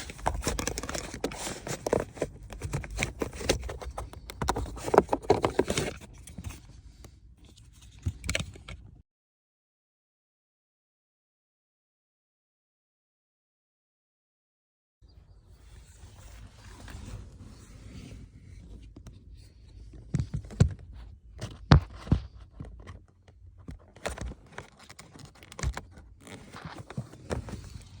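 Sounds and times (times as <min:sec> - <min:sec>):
rustling and scraping: 0:00.0 - 0:08.9, 0:15.6 - 0:28.0.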